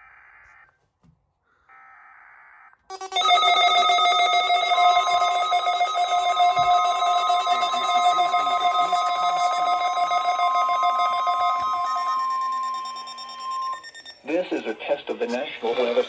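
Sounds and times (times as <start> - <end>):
steady single tone: 2.9 - 14.2
pulsing electronic alert tone: 2.9 - 14.3
digital data burst: 2.9 - 16.0.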